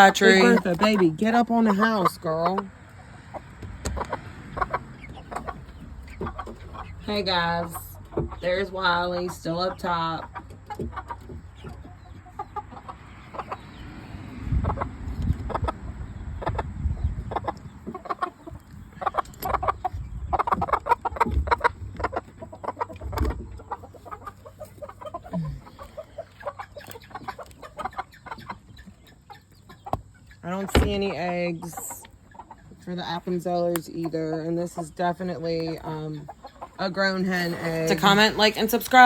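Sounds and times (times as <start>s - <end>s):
chickens clucking: 0.0s - 39.0s.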